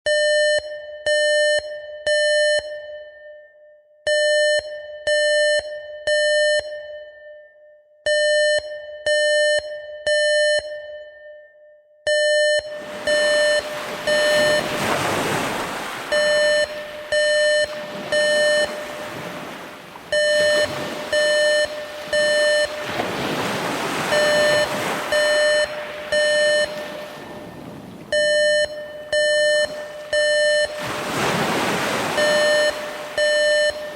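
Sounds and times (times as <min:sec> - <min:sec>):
alert alarm beeping: 0:12.1 - 0:33.9
ocean waves: 0:12.7 - 0:33.9.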